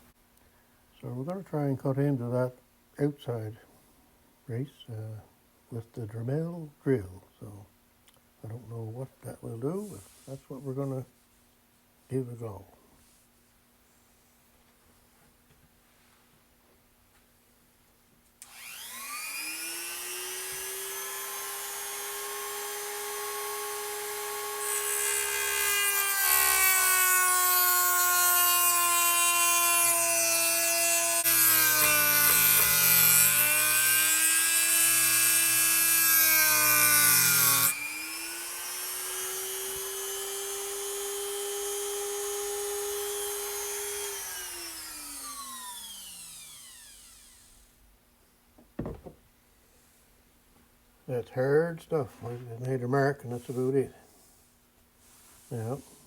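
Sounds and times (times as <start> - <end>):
rotary tool grinding steel: 18.4 - 47.6
rotary tool whining: 18.4 - 47.7.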